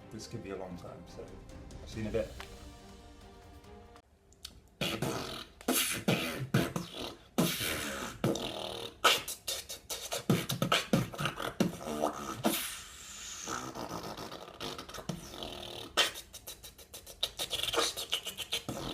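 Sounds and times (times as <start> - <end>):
man beatboxing: 4.8 - 18.9.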